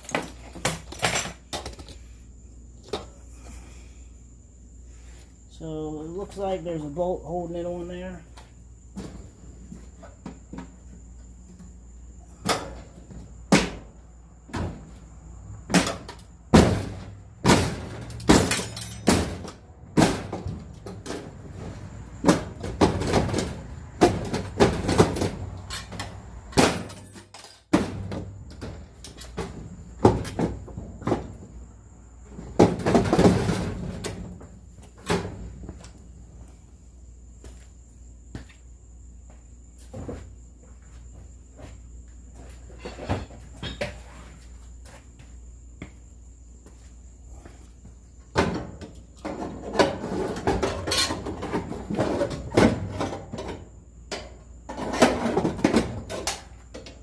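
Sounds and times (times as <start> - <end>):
metal clanks and knocks: 0.0 - 2.0, 15.7 - 31.5, 42.7 - 44.1, 48.3 - 57.0.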